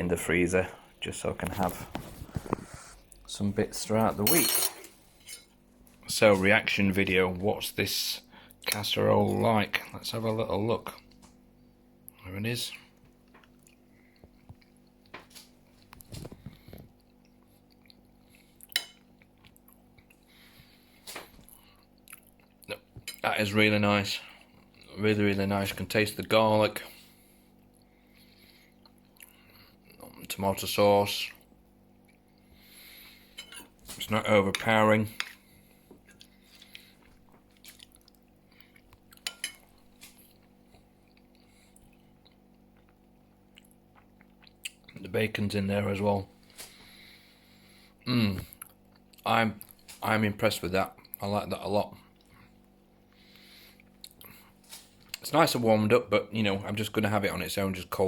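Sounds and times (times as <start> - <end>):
faint steady hum: 0.0 - 58.0
soft chewing: 12.8 - 23.2, 24.2 - 25.0, 26.9 - 30.3, 31.3 - 45.0, 46.3 - 50.0, 51.9 - 55.2
fork clinking against dish: 39.2 - 39.7.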